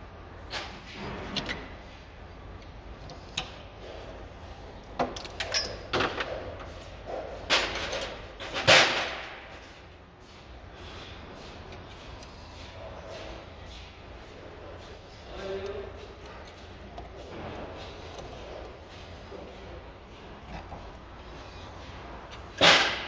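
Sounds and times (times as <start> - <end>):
metal tools knocking and clicking: 4.9 - 8.8.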